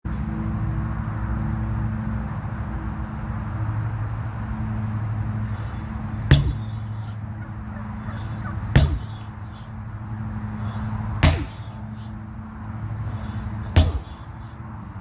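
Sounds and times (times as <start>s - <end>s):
sledgehammer strikes: 5.4s - 9.8s, 10.4s - 12.2s, 12.9s - 14.8s.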